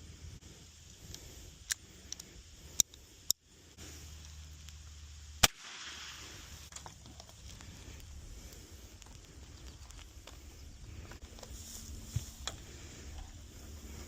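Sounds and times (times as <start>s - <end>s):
sharp gunshot: 5.4s - 6.2s.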